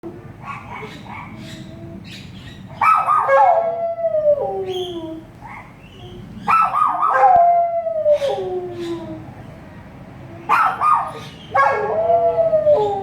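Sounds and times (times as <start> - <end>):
dog howling: 6.0 - 9.3, 11.6 - 13.0.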